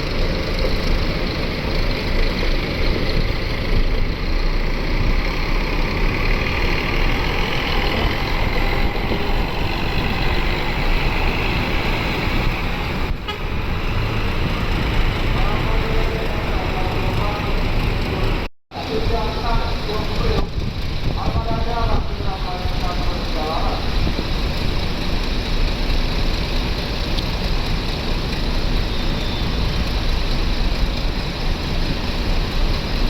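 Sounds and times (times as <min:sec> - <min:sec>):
bus engine and road noise: 0:00.0 - 0:33.0.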